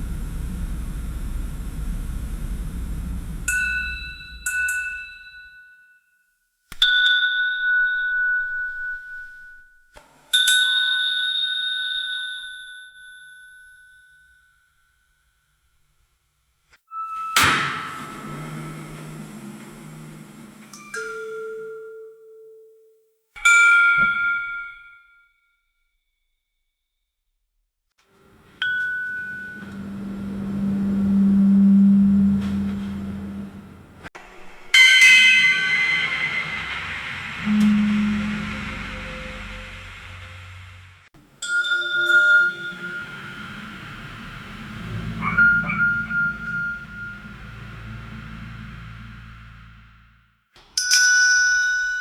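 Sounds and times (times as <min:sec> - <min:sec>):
low steady hum: 0:00.0 - 0:04.5, 0:17.6 - 0:21.0, 0:28.2 - 0:50.2
elevator arrival chime: 0:28.6 - 0:33.9, 0:41.4 - 0:49.9.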